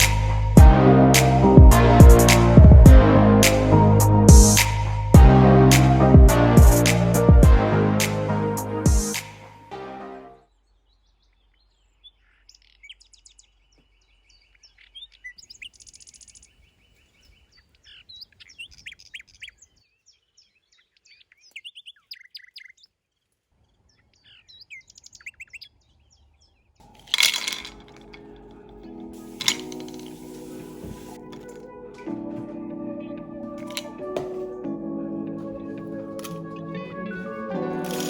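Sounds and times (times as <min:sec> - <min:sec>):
music: 0:00.0 - 0:10.4, 0:27.2 - 0:38.0
songbirds chirping and trilling: 0:10.4 - 0:26.9.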